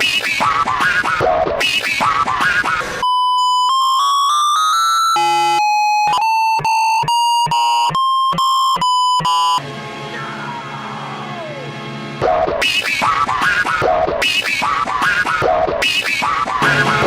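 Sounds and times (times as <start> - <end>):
electronic beep melody: 3.0 - 9.6
stuttering chopped audio: 12.2 - 17.0.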